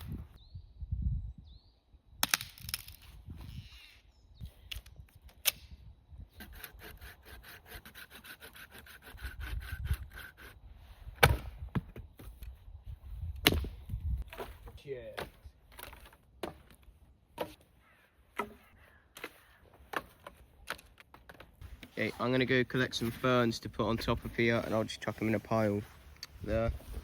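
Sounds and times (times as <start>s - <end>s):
rasping strokes on wood: 6.4s - 10.6s.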